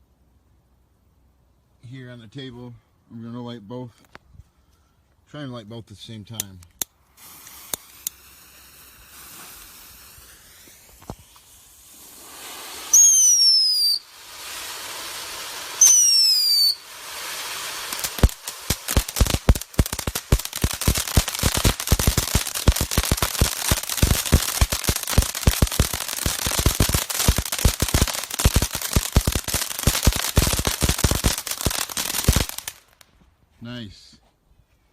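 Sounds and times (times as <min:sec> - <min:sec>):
dense rapid firework crackling: 0:07.1 - 0:33.0
firework fountain hissing: 0:07.1 - 0:33.0
firework whistles falling in pitch: 0:12.7 - 0:14.1, 0:15.7 - 0:16.9.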